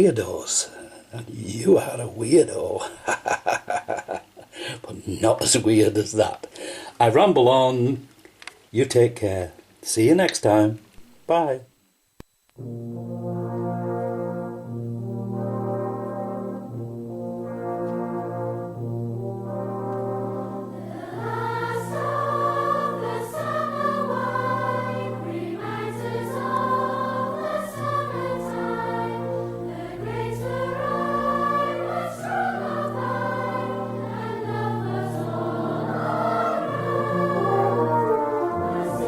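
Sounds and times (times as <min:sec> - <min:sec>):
choir singing: 0:20.1 - 0:39.0.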